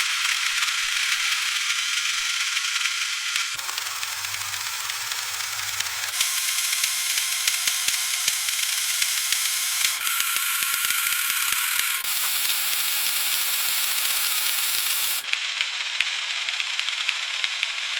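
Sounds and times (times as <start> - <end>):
food sizzling in hot oil: 12.0 - 15.2.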